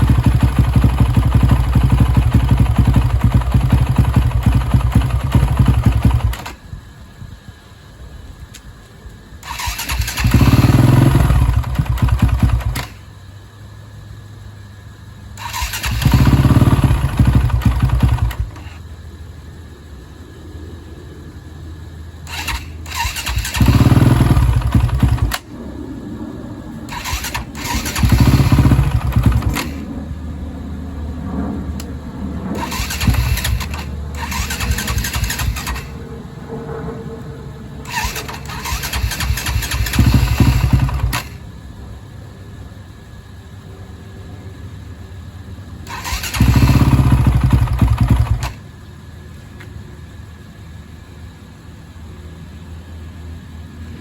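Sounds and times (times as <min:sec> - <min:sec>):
engine throttle bursts: 0:00.0 - 0:06.6, 0:09.4 - 0:13.1, 0:15.4 - 0:18.8, 0:22.2 - 0:25.7, 0:26.7 - 0:31.0, 0:31.6 - 0:36.3, 0:37.8 - 0:41.6, 0:45.8 - 0:48.6
motorcycle engine idling unevenly: 0:00.0 - 0:07.9, 0:09.4 - 0:13.9, 0:15.4 - 0:19.0, 0:22.2 - 0:36.7, 0:37.4 - 0:54.0.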